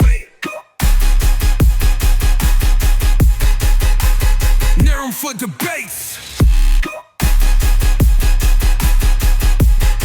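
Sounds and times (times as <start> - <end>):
dubstep music: 0.0 - 10.0
heavy sub-bass: 0.8 - 5.1, 6.3 - 10.0.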